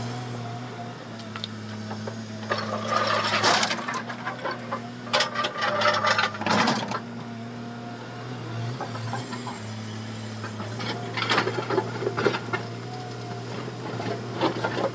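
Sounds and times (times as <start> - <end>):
excavator engine humming: 0.0 - 14.9
loud rattling and clatter: 2.4 - 7.0.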